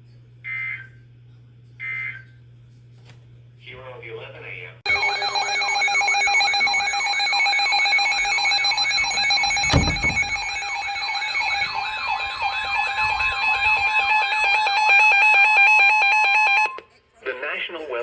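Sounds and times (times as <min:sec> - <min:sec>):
weather alert radio alarms: 0:04.9 - 0:16.8
thump: 0:09.6 - 0:10.4.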